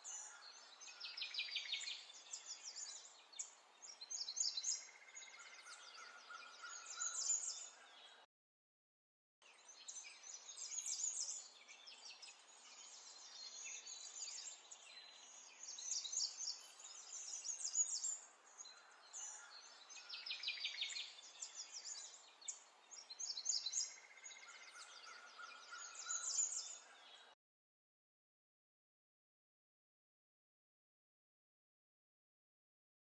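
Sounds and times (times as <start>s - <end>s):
faint outdoor background noise: 0.0s - 8.3s, 9.4s - 27.4s
songbirds chirping and singing: 0.0s - 8.3s, 9.4s - 27.4s.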